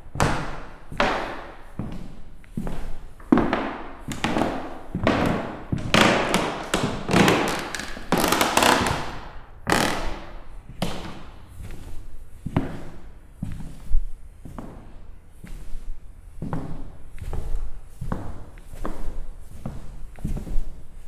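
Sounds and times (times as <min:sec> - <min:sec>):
footsteps on wooden floor: 0:00.1 - 0:21.0
floorboards creaking: 0:00.2 - 0:12.9.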